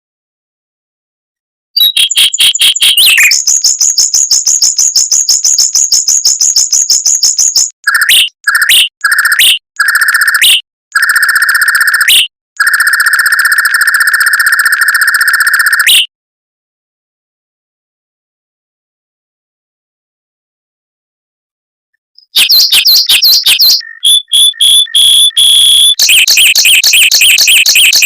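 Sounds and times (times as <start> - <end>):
mockingbird trilling: 22.2 - 28.0.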